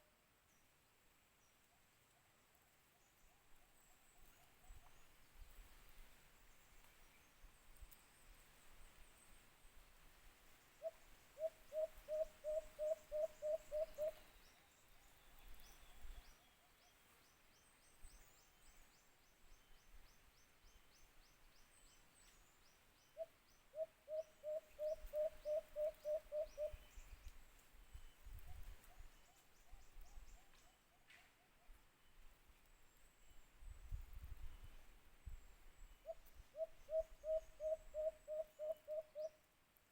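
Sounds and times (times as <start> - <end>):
dove hooting: 10.8 - 14.2, 23.7 - 26.8, 36.0 - 39.3.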